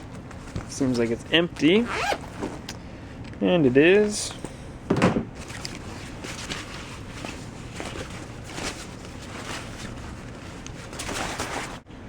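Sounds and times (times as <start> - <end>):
rustling of items in boxes: 0.0 - 2.7, 5.4 - 11.8.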